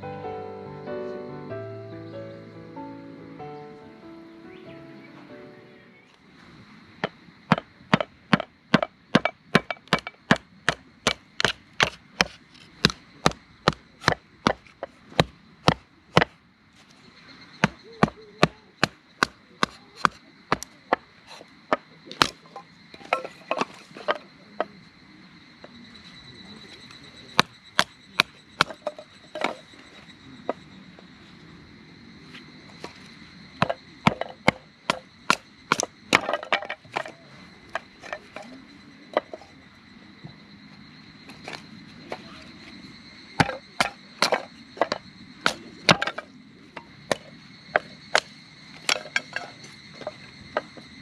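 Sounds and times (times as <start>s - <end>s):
sharp knocks: 7.0s - 16.3s.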